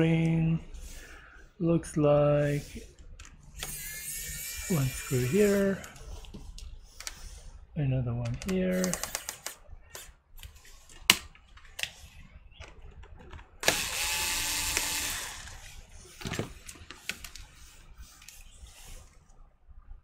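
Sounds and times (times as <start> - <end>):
steady mechanical noise: 12.6 - 19.2.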